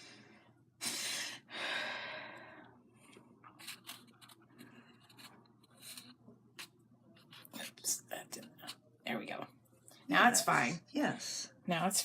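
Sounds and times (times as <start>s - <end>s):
craft materials scratching and rubbing: 3.5s - 8.0s.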